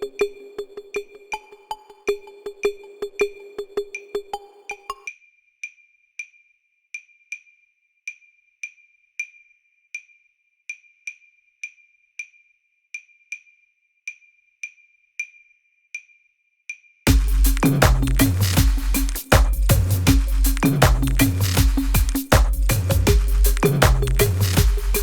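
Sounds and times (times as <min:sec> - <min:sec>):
electronic music with heavy bass: 0:00.0 - 0:01.2, 0:17.1 - 0:25.0
wood-block-like tick: 0:17.1 - 0:25.0.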